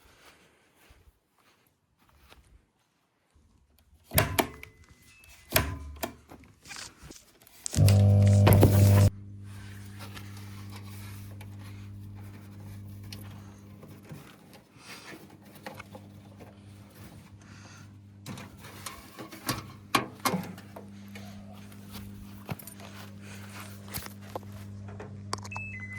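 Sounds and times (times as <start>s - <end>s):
loud humming tone: 7.7s - 14.0s
washing machine motor hum: 7.8s - 25.9s.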